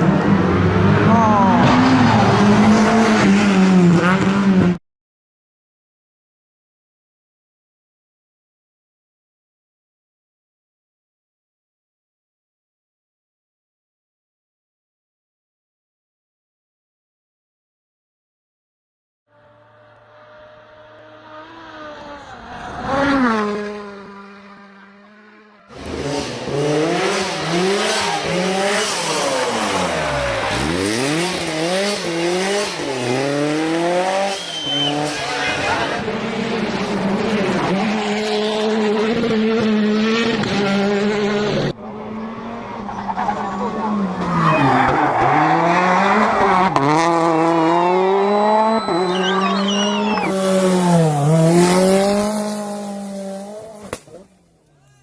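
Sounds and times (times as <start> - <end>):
rally car engine revving hard: 0.0 - 4.8, 19.3 - 54.3
tyre squeal: 34.2 - 35.4, 48.3 - 50.5.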